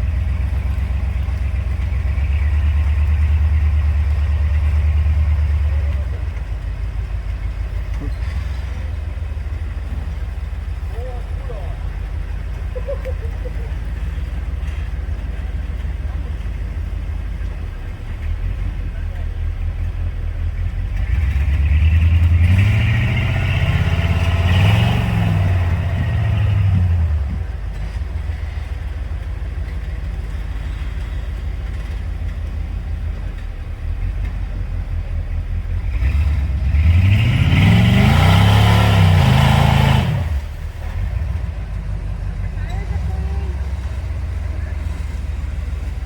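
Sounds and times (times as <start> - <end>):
off-road vehicle engine revving: 0.0 - 46.0.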